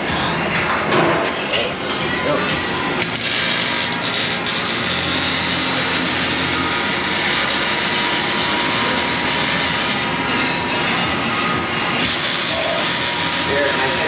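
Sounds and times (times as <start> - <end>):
power tool rushing hiss: 3.0 - 10.4, 12.0 - 14.0.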